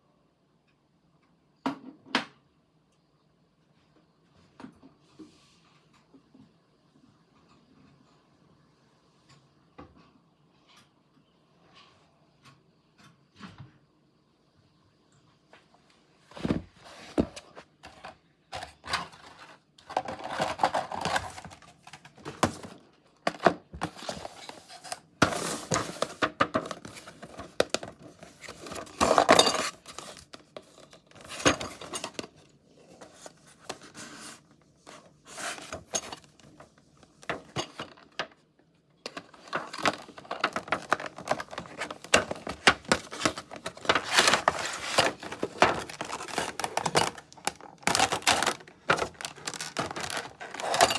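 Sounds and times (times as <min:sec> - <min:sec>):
packaging crinkling and tearing: 0:39.1 - 0:50.9.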